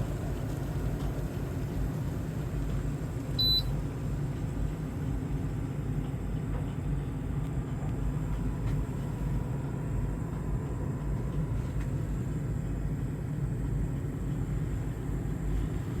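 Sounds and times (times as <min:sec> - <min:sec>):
kettle water rumbling: 0:00.0 - 0:06.4.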